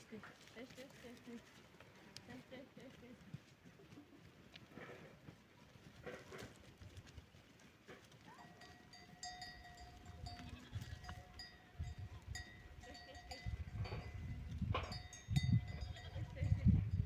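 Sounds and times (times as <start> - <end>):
livestock bell clinking: 8.2 - 17.0.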